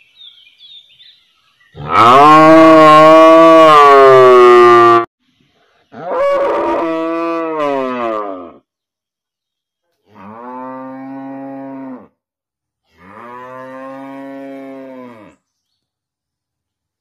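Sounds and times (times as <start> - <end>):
cow mooing: 1.8 - 5.1, 6.0 - 8.6, 10.1 - 12.2, 13.0 - 15.4.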